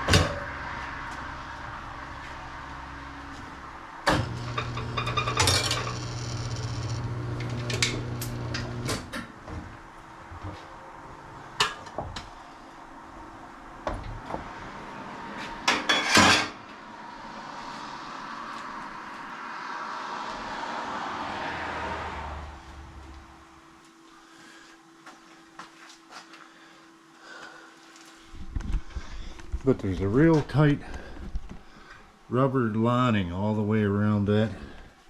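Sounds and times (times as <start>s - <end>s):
steady motor hum: 0.0s - 11.5s.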